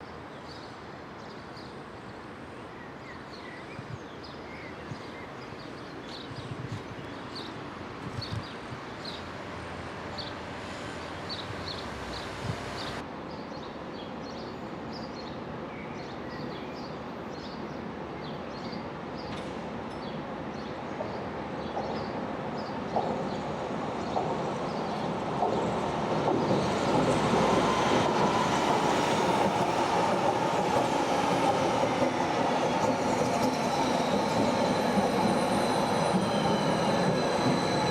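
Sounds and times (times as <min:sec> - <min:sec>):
train approaching: 0:07.2 - 0:13.2, 0:18.9 - 0:37.9.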